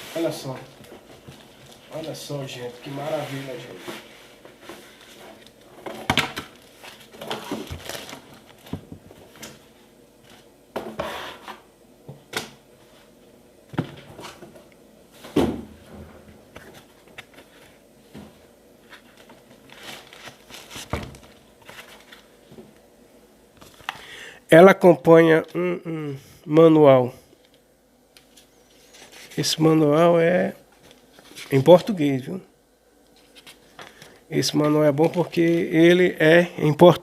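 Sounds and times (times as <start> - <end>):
plastic and cardboard rustling: 0.0 - 9.6, 16.5 - 22.7.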